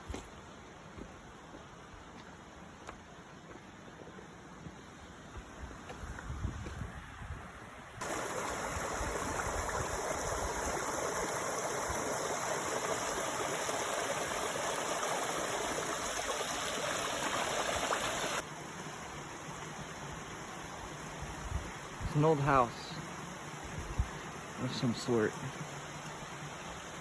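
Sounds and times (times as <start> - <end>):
stream water running: 0.0 - 27.0
wind rumble on microphone: 5.5 - 7.6.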